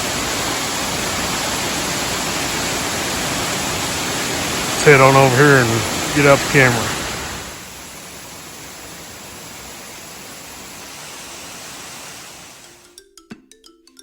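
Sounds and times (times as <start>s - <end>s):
waterfall rushing: 0.0s - 12.9s
marimba-like mallet music: 12.8s - 14.0s.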